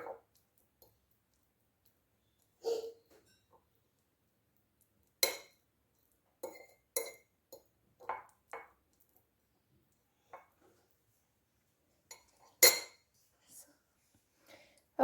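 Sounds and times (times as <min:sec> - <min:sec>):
utensil striking a dish: 0:05.2 - 0:05.6.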